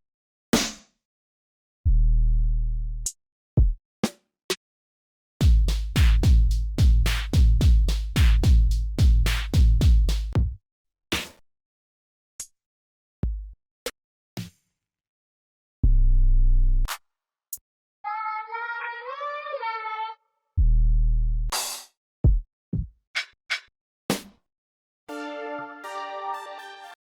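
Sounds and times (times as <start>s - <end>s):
deep bass drum notes: 5.4s - 10.6s.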